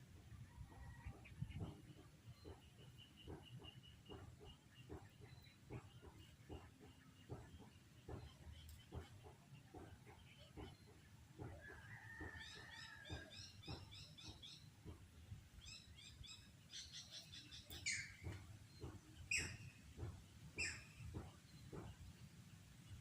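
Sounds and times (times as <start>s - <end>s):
birds chirping: 0.0s - 23.0s
faint low knocks: 0.2s - 15.5s.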